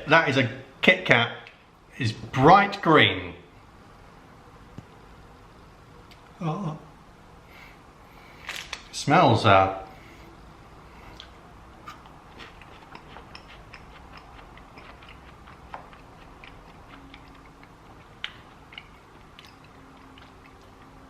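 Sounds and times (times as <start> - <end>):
person chewing crunchy wafer: 11.0 - 21.0.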